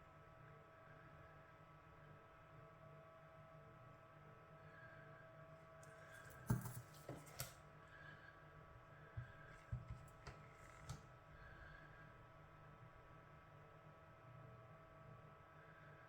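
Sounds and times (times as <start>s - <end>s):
faint electrical hum: 0.0s - 16.0s
soldering tools clicking and tapping: 6.4s - 7.6s.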